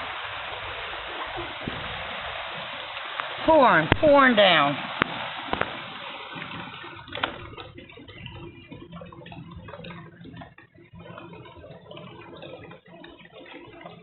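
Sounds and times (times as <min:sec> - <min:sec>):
heavy rain pouring: 0:00.0 - 0:07.6
sharp knocks: 0:05.0 - 0:06.6.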